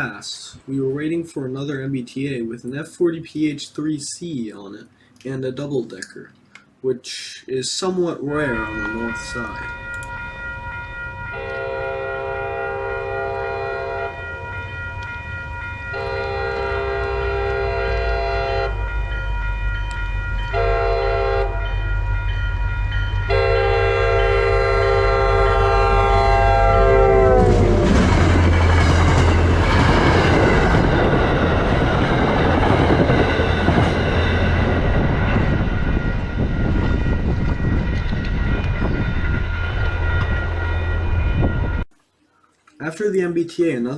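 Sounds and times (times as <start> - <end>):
train clattering by: 8.3 - 11.8, 25.6 - 41.8
locomotive horn blasts: 11.2 - 14.6, 15.9 - 19.0, 20.4 - 21.8, 23.2 - 27.9.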